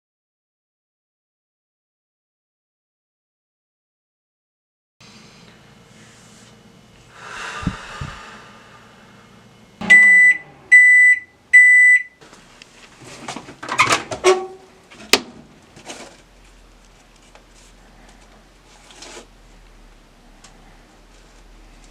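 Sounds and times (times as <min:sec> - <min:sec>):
microwave oven beeping: 0:09.7 - 0:12.2
clattering handling noises: 0:12.8 - 0:16.3.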